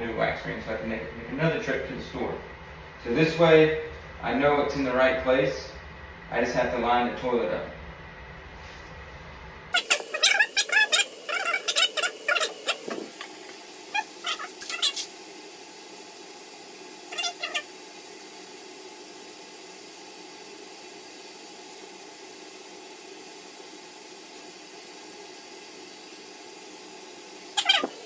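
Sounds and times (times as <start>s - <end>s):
animal cries: 9.8s - 13.4s, 14.0s - 15.1s, 17.1s - 17.7s, 27.6s - 28.0s.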